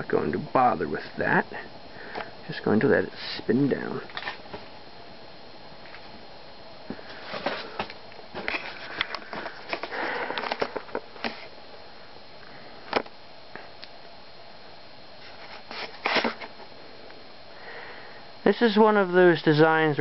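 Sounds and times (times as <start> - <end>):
faint ceiling fan hum: 0.0 - 20.0
breathy rustles: 6.9 - 11.6.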